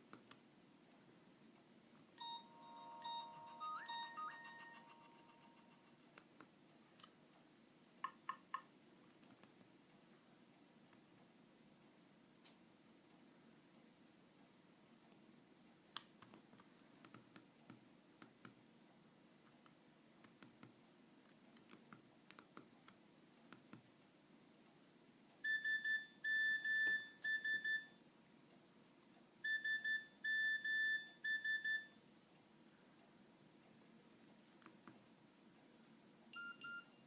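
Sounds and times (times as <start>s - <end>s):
phone beep pattern: 2.2s - 5.9s, 25.4s - 28.0s, 29.4s - 32.0s, 36.4s - 37.0s.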